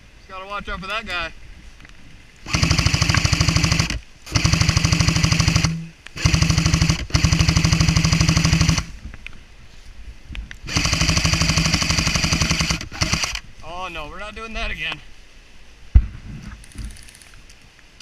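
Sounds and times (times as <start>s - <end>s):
airsoft gun full-auto bursts: 2.5s - 8.9s, 10.7s - 13.4s.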